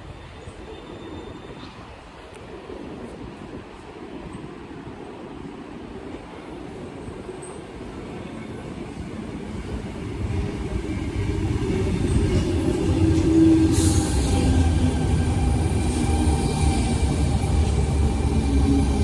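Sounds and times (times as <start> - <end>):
electric train approaching: 7.2 - 19.0.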